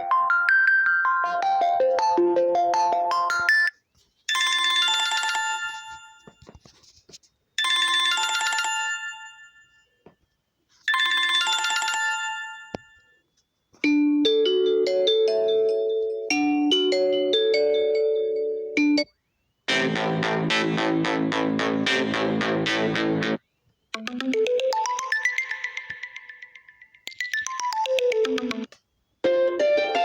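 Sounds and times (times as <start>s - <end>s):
melodic phone ringtone: 0.0s - 6.6s, 7.6s - 10.0s, 10.8s - 13.2s, 13.8s - 19.2s, 24.0s - 30.0s.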